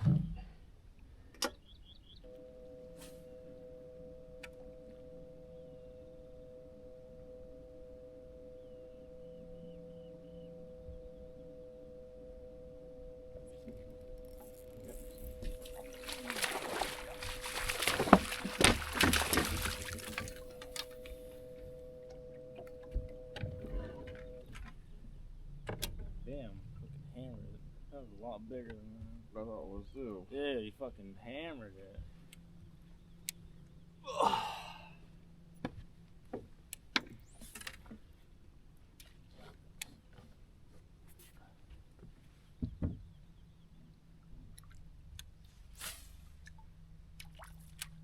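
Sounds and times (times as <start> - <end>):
steady two-note hum: 2.0 - 34.2
fish splashing in water: 14.3 - 21.2
person sighing: 34.0 - 35.0.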